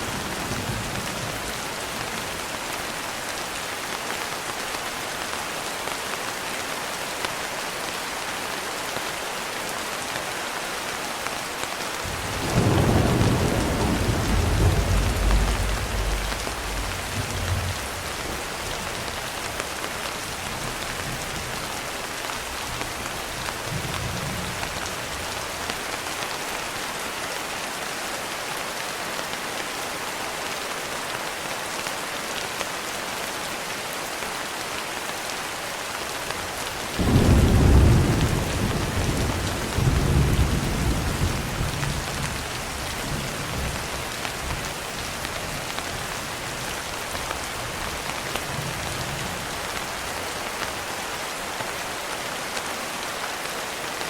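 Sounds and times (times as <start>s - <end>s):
thunder rumbling: 12.0s - 19.1s, 37.0s - 43.8s
rain hissing: 12.0s - 21.2s.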